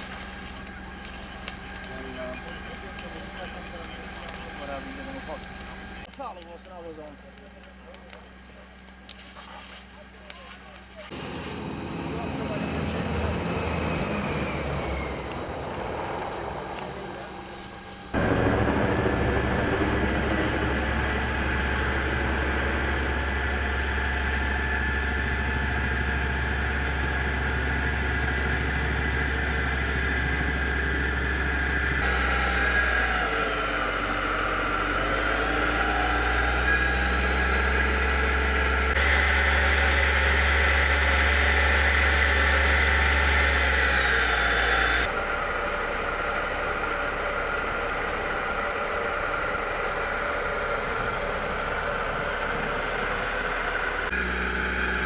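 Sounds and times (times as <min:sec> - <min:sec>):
vehicle engine idling: 0:11.9 - 0:55.0.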